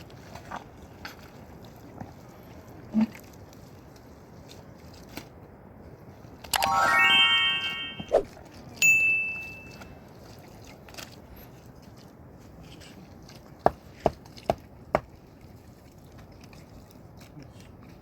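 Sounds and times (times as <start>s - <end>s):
short ringing tone: 8.8s - 9.9s.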